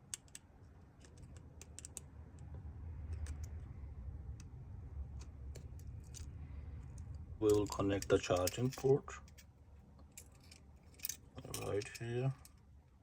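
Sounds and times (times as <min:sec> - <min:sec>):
small tools clicking and tapping: 0:00.0 - 0:02.5, 0:07.0 - 0:12.6
steady low hum: 0:00.0 - 0:13.0.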